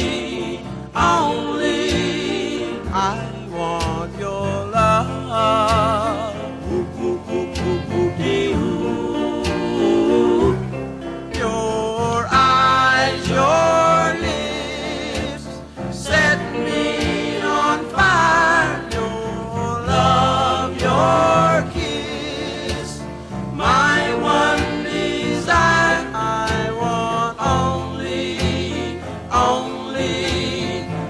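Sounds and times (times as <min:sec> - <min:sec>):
soul song with vibrato vocals: 0:00.0 - 0:31.0
band with steady drum beat: 0:16.1 - 0:27.7.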